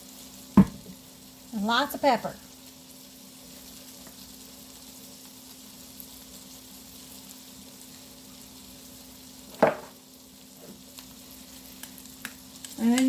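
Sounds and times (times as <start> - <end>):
chicken frying in oil: 0.0 - 13.0.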